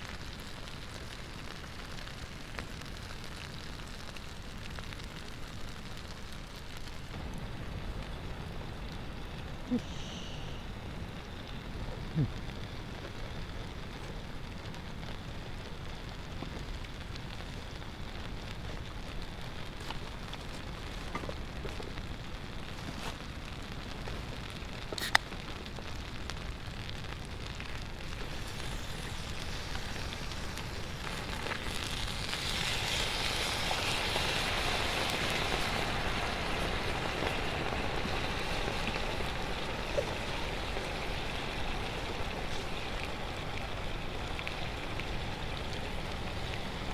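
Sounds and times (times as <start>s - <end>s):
surf washing on a beach: 28.1s - 46.9s.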